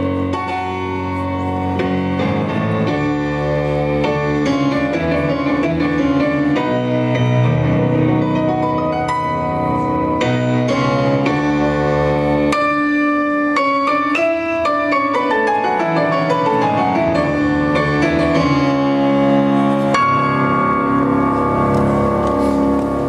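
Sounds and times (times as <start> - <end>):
piano-led dance music: 0.0 - 23.0.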